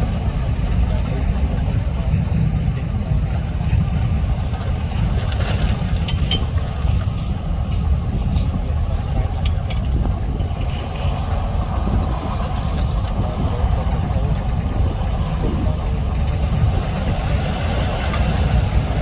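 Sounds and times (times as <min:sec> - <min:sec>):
diesel machinery engine rumbling: 0:00.0 - 0:19.0.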